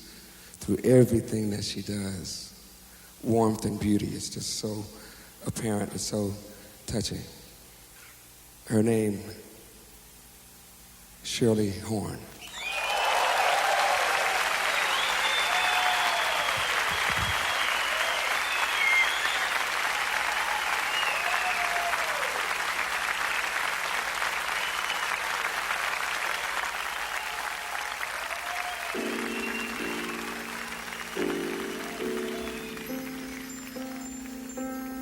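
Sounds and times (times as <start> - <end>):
whistles: 12.4 - 22.4, 23.3 - 25.4, 26.8 - 34.5
audience applauding and cheering: 12.4 - 34.6
soft music: 28.9 - 35.0.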